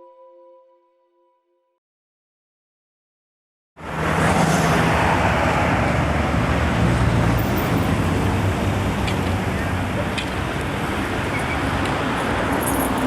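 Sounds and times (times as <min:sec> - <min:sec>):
road hiss: 0:03.8 - 0:13.0.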